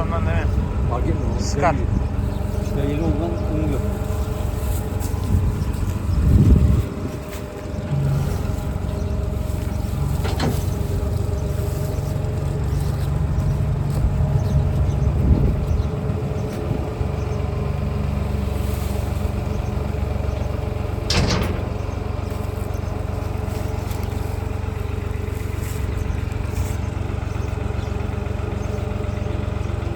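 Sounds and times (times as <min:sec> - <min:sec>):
tractor engine running: 0:00.0 - 0:29.9
sharp knocks: 0:21.1 - 0:21.9.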